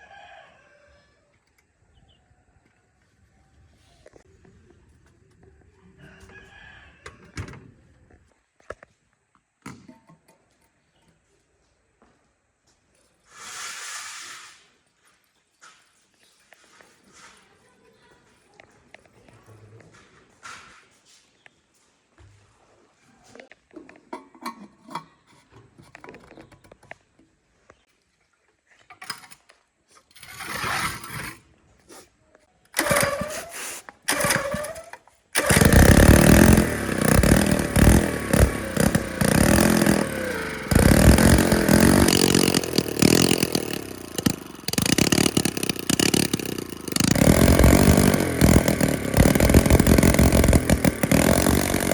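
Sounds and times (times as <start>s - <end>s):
small gasoline engine starting: 30.1s - 31.5s, 32.7s - 51.9s.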